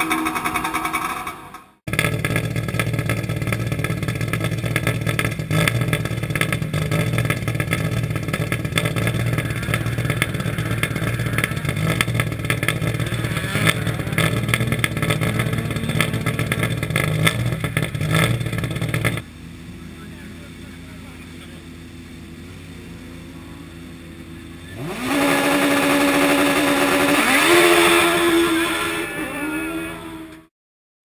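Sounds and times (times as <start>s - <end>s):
rally car engine crackling: 0.0s - 30.5s.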